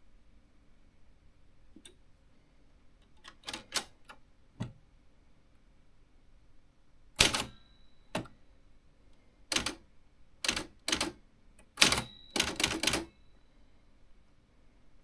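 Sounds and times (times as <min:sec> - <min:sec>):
typewriter key strikes: 0:07.2 - 0:07.6, 0:09.5 - 0:09.8, 0:11.8 - 0:13.1.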